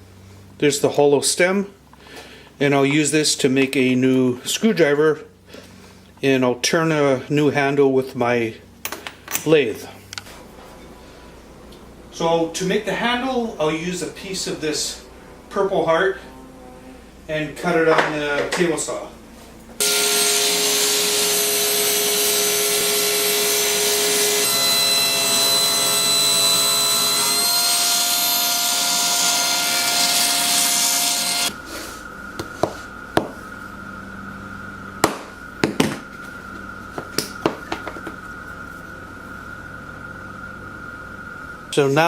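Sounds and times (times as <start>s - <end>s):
quiet steady hum: 0.0s - 19.8s, 22.0s - 42.0s
table saw cutting wood: 19.8s - 31.8s.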